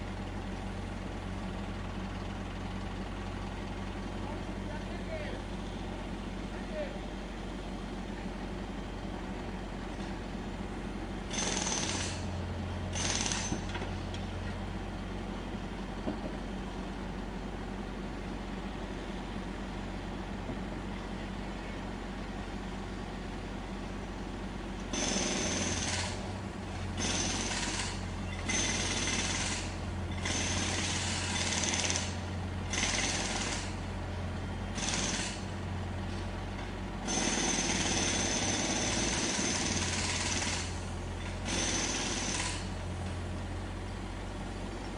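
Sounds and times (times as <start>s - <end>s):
engine humming: 0.0s - 37.1s, 37.7s - 44.9s
jackhammer breaking road surface: 11.3s - 12.3s, 12.9s - 13.8s, 24.9s - 26.2s, 26.9s - 33.8s, 34.7s - 35.5s, 37.0s - 42.8s.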